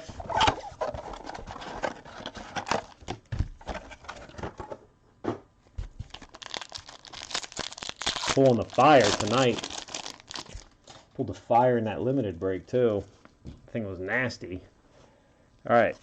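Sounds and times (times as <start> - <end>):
card packaging crinkling: 6.0 - 10.8.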